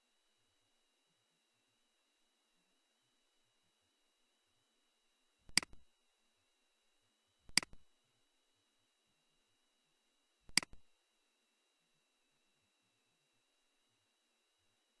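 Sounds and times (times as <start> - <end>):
computer mouse clicks: 5.5 - 5.8, 7.5 - 7.8, 10.5 - 10.8.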